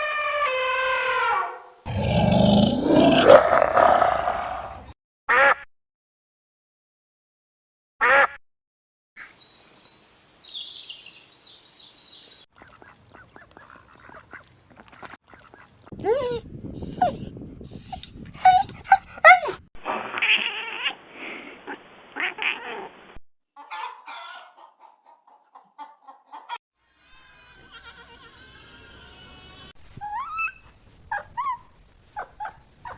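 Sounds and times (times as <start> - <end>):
animal calls: 1.9 - 4.9, 15.5 - 21.0.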